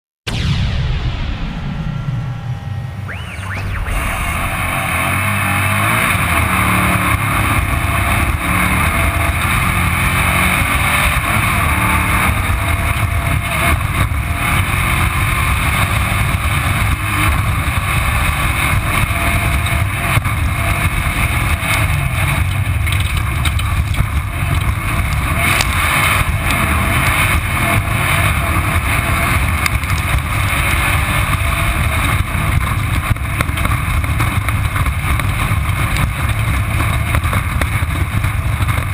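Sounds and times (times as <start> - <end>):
wind and road noise: 0.3 - 38.9
race car engine running hard: 1.6 - 38.9
car knocks and rattles: 19.2 - 30.4, 31.1 - 38.9.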